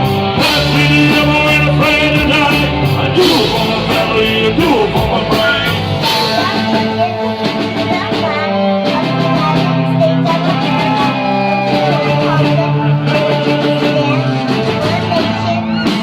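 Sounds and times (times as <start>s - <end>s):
electric guitar melody: 0.0s - 16.0s
live rock band playing: 0.0s - 16.0s.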